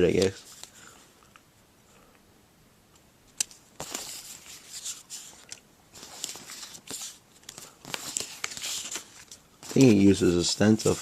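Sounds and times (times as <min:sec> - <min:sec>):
paper stickers rustling: 0:00.0 - 0:00.8, 0:03.4 - 0:11.0.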